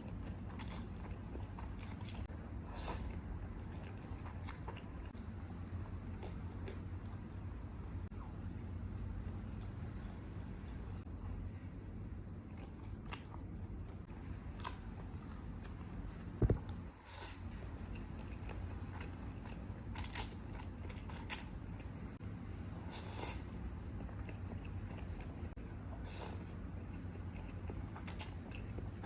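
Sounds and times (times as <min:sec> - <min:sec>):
mouth chewing noodles: 0:00.0 - 0:16.4, 0:17.1 - 0:22.2, 0:22.9 - 0:29.0
low hum: 0:00.0 - 0:22.9.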